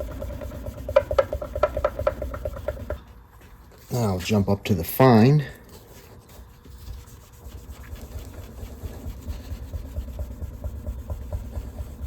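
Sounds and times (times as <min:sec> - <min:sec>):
polishing compound rubbing strokes: 0:05.7 - 0:12.0.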